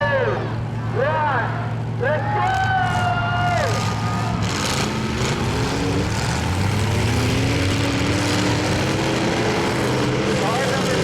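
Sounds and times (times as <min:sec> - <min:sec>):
car engines running: 0:00.0 - 0:11.0
engine revving up: 0:02.4 - 0:11.0.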